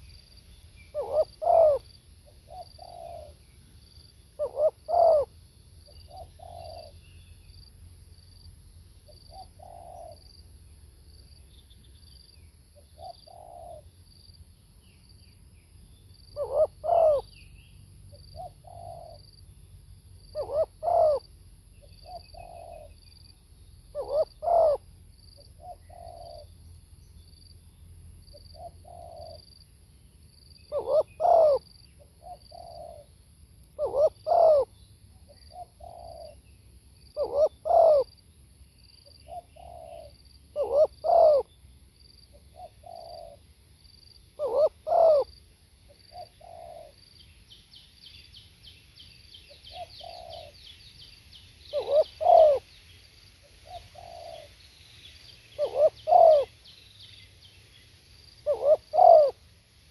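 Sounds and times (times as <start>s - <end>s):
dove cooing: 0.9s - 3.4s, 4.4s - 5.3s, 5.9s - 7.0s, 9.3s - 10.3s, 13.0s - 13.9s, 16.4s - 17.3s, 18.3s - 19.2s, 20.3s - 21.2s, 21.8s - 23.0s, 23.9s - 24.8s, 25.6s - 26.5s, 28.3s - 29.5s, 30.7s - 33.1s, 33.8s - 34.7s, 35.3s - 36.4s, 37.2s - 38.1s, 39.2s - 41.5s, 42.5s - 43.4s, 44.4s - 45.3s, 46.1s - 47.0s, 49.5s - 50.6s, 51.7s - 52.7s, 53.6s - 54.6s, 55.6s - 56.6s, 58.4s - 59.4s.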